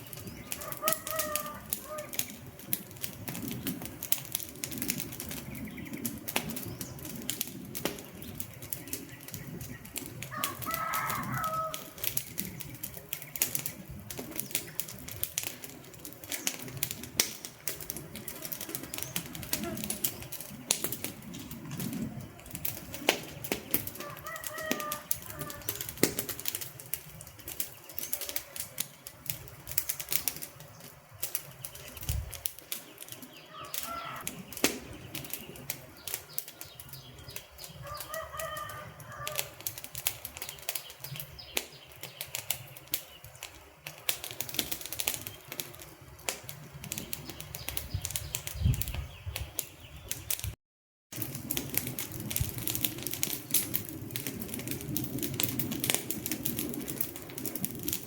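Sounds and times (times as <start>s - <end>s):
wood fire crackling and popping: 0.0s - 58.0s
faint bird calls: 0.1s - 2.4s, 33.4s - 36.9s.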